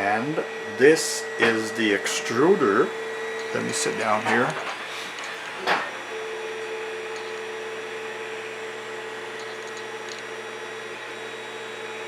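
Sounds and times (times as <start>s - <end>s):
three d printer humming and whining: 0.0s - 12.0s.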